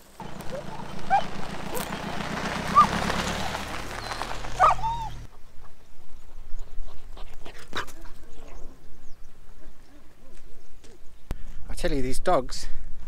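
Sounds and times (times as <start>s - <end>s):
dogs yelping and whining: 0.4s - 1.9s, 2.7s - 3.0s, 4.0s - 5.3s.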